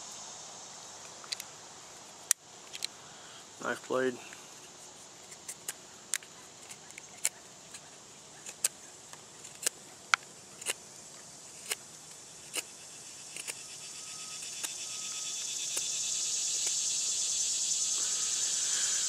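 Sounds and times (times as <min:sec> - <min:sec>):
insects trilling: 0:00.0 - 0:19.0
knife blade cutting a stick: 0:10.6 - 0:10.8, 0:13.3 - 0:13.6.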